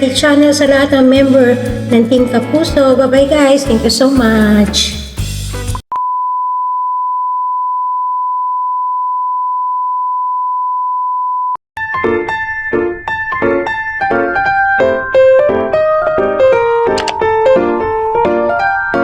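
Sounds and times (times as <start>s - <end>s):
keyboard piano music: 0.0s - 4.9s, 11.8s - 19.0s.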